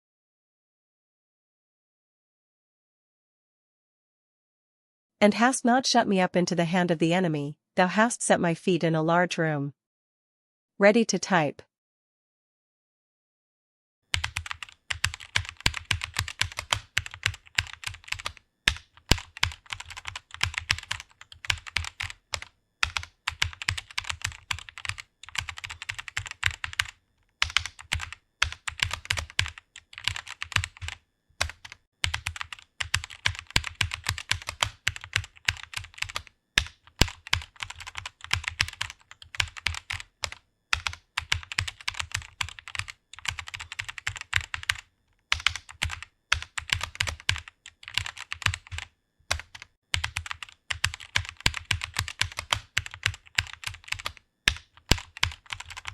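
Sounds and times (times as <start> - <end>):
keyboard typing clicks: 14.2 - 55.9.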